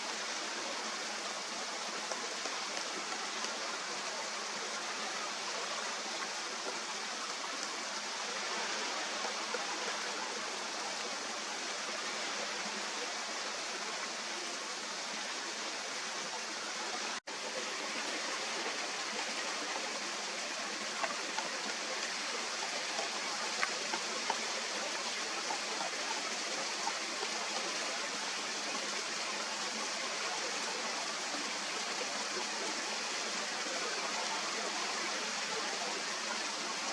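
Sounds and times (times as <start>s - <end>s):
faint ticks: 20.4s - 25.2s.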